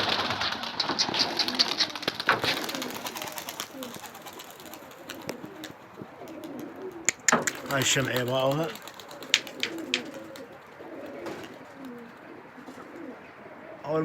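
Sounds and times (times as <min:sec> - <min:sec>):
rustling and clicking: 0:00.0 - 0:05.8, 0:06.4 - 0:10.4
pigeons cooing: 0:00.0 - 0:14.0.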